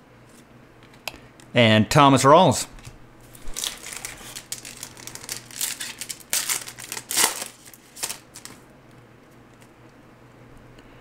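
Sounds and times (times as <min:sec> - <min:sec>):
cards being handled: 0:03.3 - 0:08.6
plastic wrapper crinkling and tearing: 0:03.3 - 0:08.6.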